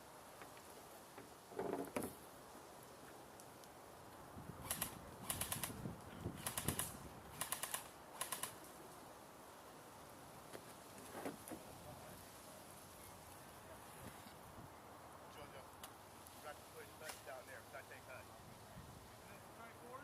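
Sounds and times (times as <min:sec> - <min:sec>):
airsoft rifle bursts: 0:04.6 - 0:05.8, 0:06.4 - 0:08.6.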